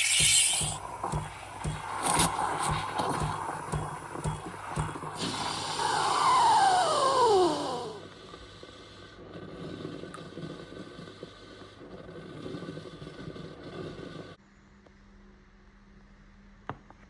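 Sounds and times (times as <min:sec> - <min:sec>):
espresso machine hissing: 0:00.0 - 0:13.7
low mechanical noise: 0:00.1 - 0:09.3.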